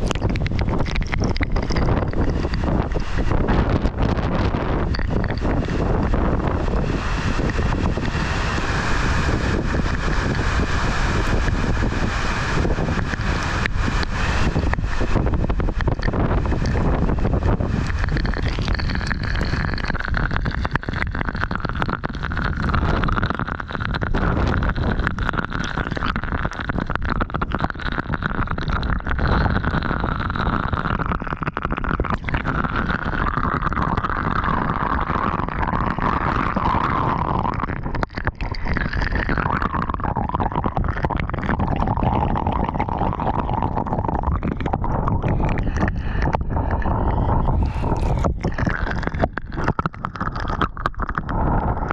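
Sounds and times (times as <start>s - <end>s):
wind buffeting microphone: 0.0s - 51.9s
high rushing noise: 1.8s - 20.6s.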